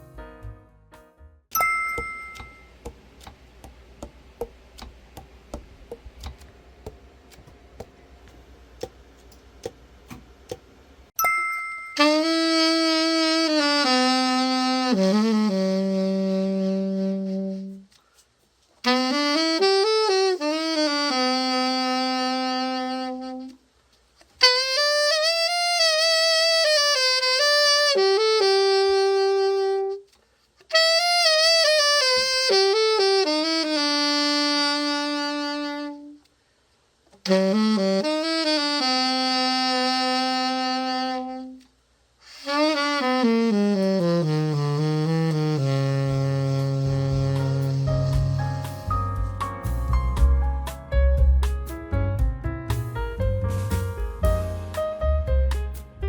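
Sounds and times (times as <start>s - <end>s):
alto saxophone phrases: 12.0s - 17.9s, 18.8s - 23.7s, 24.4s - 30.1s, 30.7s - 36.3s, 37.2s - 48.9s.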